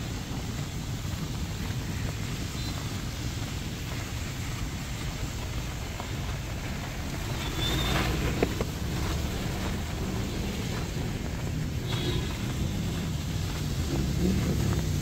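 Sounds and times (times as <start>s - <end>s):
wind and rain rumble: 0.0s - 15.0s
vehicle passing: 4.9s - 15.0s.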